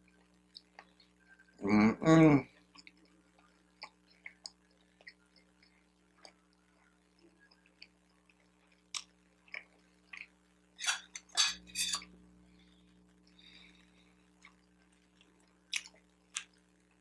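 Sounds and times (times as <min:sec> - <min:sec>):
close chewing with wet mouth clicks: 0:02.7 - 0:10.3.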